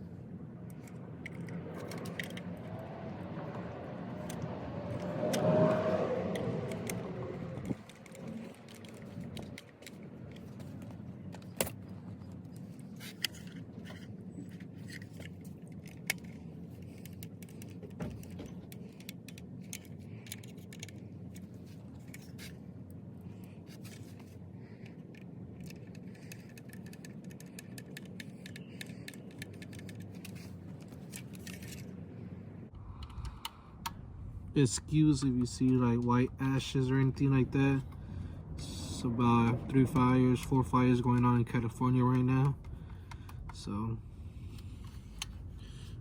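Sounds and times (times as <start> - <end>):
steady low hum: 0.0 - 46.0
small parts clicking and rattling: 0.6 - 2.8, 6.3 - 22.6, 23.2 - 32.0.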